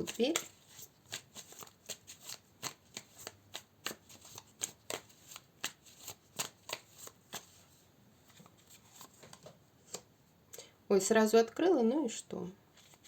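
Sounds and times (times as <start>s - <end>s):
cards being shuffled: 0.0s - 10.1s, 12.8s - 13.0s.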